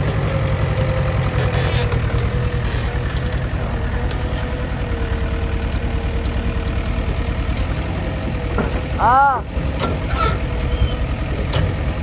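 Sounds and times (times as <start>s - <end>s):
diesel engine rumbling: 0.0s - 12.0s
thin steady whine: 1.2s - 8.4s.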